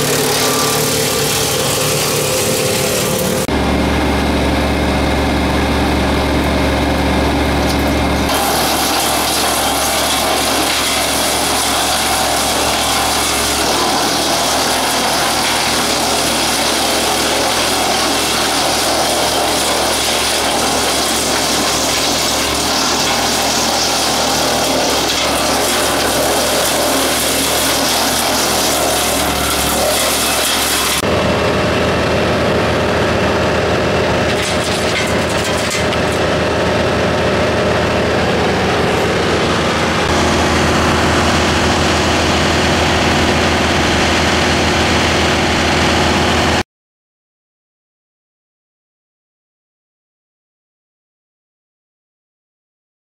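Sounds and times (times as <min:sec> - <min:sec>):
rough grinding of wood chipping: 0:00.0 - 0:03.5, 0:08.2 - 0:31.0, 0:34.2 - 0:36.4
wood chipper running: 0:00.0 - 0:46.6.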